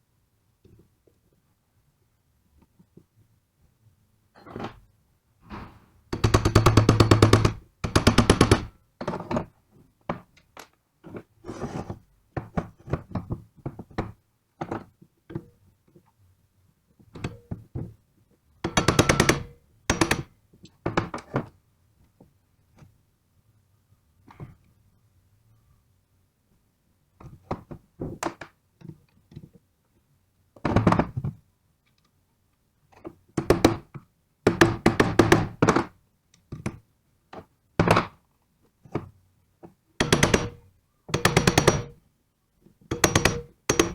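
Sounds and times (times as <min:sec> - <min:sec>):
pneumatic impact wrench hammering: 0:18.7 - 0:20.2, 0:40.0 - 0:40.6, 0:41.2 - 0:41.9, 0:42.9 - 0:43.9
tools and metal parts clanking: 0:41.2 - 0:42.0, 0:42.9 - 0:43.9.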